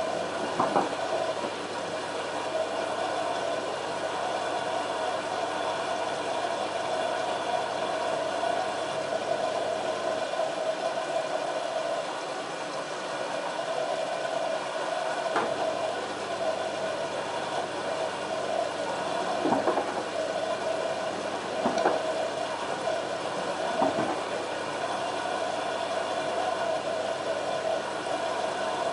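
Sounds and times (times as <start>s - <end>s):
washing machine motor hum: 0.0s - 28.9s.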